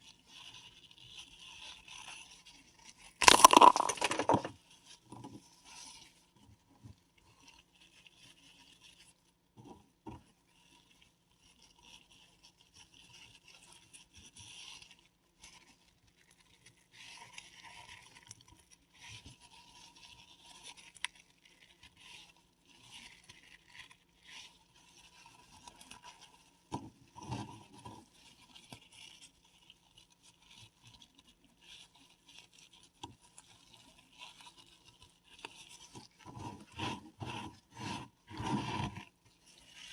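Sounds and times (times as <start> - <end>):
mothball being crushed and scraped: 3.2 - 4.5.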